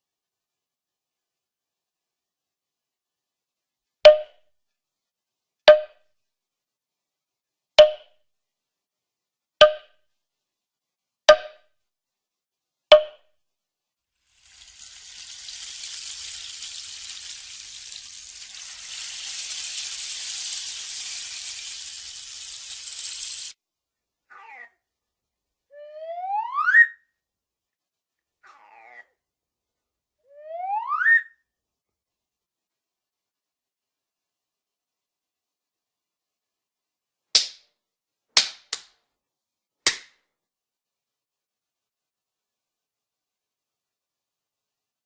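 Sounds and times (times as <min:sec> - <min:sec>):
high hiss: 0:14.4 - 0:23.6.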